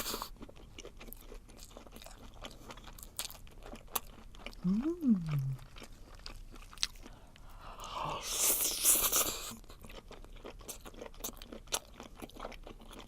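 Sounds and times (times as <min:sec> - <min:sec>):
sticky chewing mouth clicks: 0:04.6 - 0:05.9.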